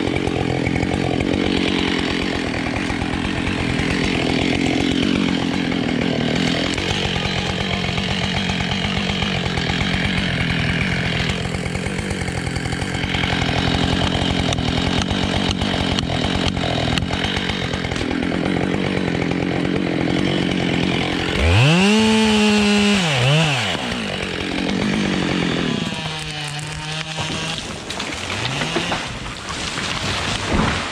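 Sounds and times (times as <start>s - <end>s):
chainsaw cutting wood: 0.0s - 30.9s
chainsaw revving: 0.0s - 30.9s.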